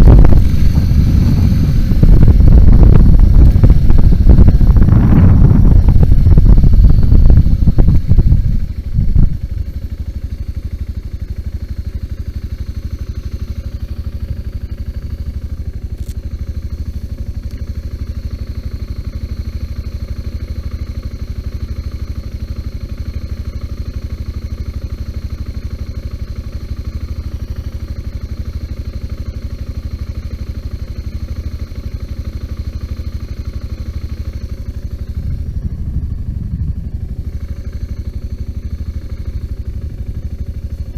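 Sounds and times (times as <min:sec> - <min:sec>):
riding and wind noise: 0:00.0 - 0:10.1, 0:34.3 - 0:39.9
motorcycle engine idling: 0:00.0 - 0:40.9.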